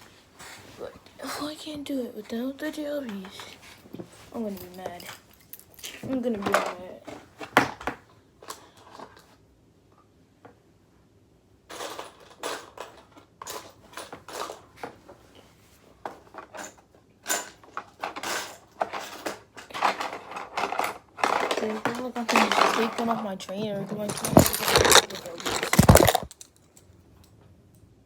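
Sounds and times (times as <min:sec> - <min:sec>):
small metal parts clicking and rattling: 0:04.4 - 0:07.0, 0:11.7 - 0:14.7, 0:16.2 - 0:26.9.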